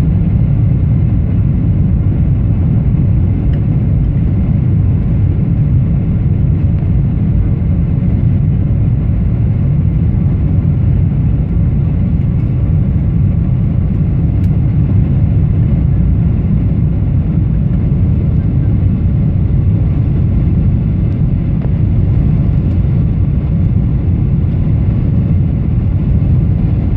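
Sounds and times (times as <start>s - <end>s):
airplane cabin engine rumble: 0.0s - 26.9s.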